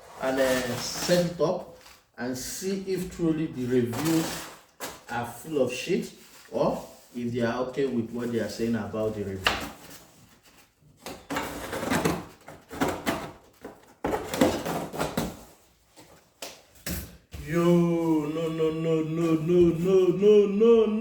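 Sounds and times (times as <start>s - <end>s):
man humming a held note: 17.4s - 21.0s.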